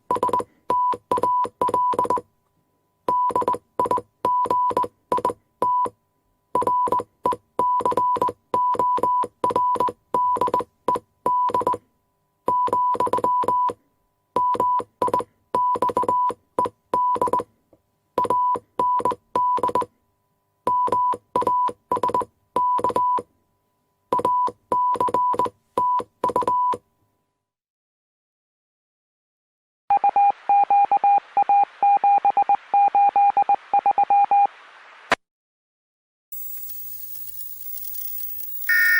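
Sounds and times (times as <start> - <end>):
key clicks: 36.4 - 38.9
morse code beeps: 36.4 - 38.9.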